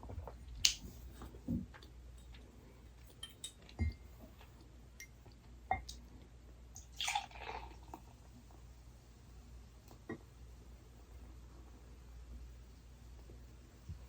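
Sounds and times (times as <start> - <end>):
beer pouring: 6.8 - 8.2.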